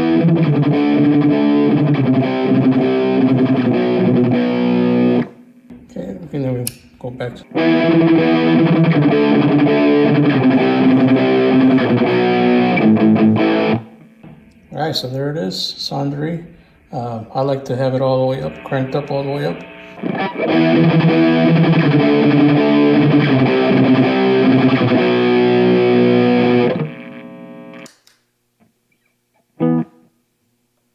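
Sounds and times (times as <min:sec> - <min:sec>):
distorted electric guitar chords: 0:00.0 - 0:05.9, 0:07.4 - 0:14.5, 0:17.8 - 0:27.9, 0:29.6 - 0:30.1
small click: 0:06.6 - 0:06.9, 0:27.8 - 0:28.2.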